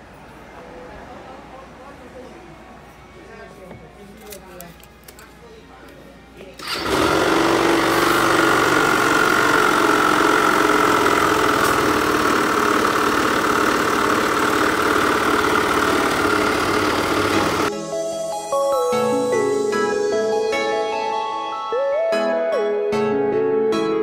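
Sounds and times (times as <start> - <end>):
scooter engine running: 6.6 - 17.7
music: 17.7 - 24.0.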